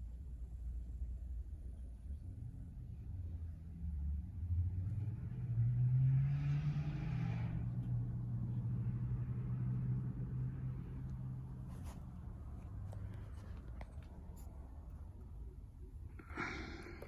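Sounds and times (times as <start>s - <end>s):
car engine humming: 4.4s - 17.0s.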